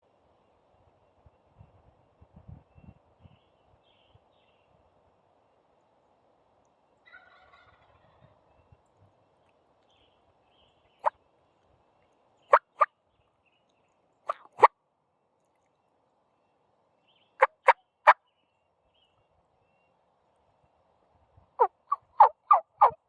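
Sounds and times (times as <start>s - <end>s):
wild turkey calling: 7.0s - 8.4s, 12.4s - 12.9s, 17.4s - 18.2s, 21.6s - 23.0s.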